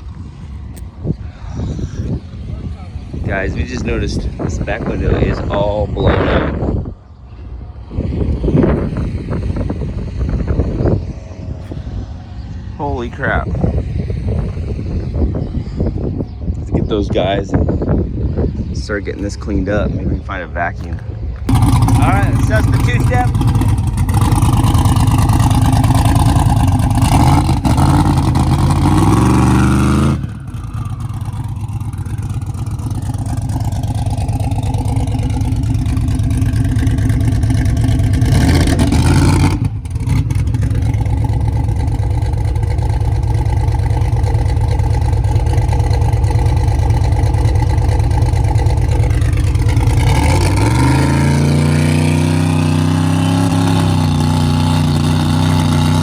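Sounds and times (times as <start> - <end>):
race car engine revving: 20.8 - 56.0.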